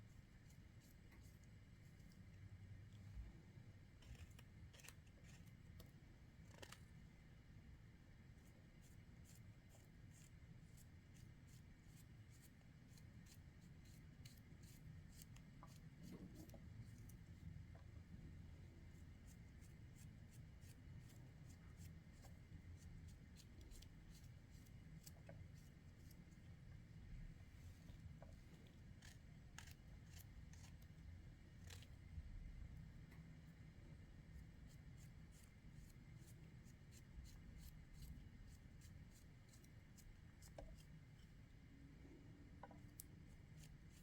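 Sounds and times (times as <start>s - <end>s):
low steady hum: 0.0s - 44.0s
light clicks and scrapes: 4.0s - 6.9s, 13.3s - 17.9s, 27.4s - 31.0s, 31.6s - 32.1s.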